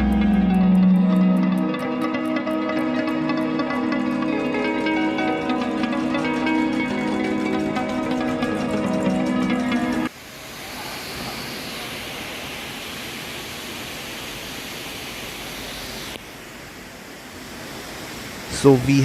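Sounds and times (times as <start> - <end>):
background music: 0.0 - 10.1.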